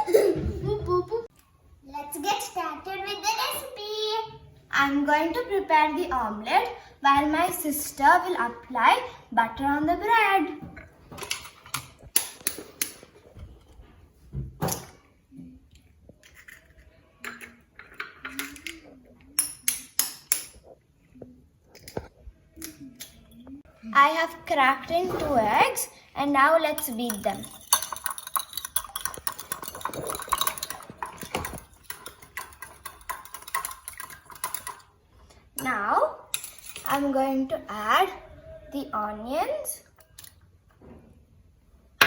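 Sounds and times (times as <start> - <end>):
whisk clicking against bowl: 27.1 - 34.8.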